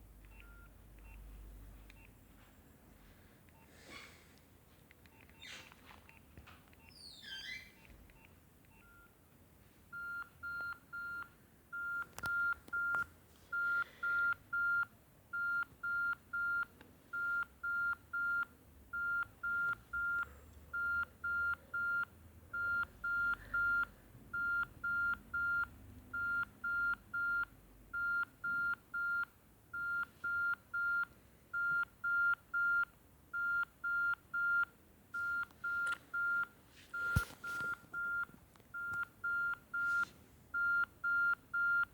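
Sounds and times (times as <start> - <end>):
beeping phone ringtone: 20.8 - 27.4.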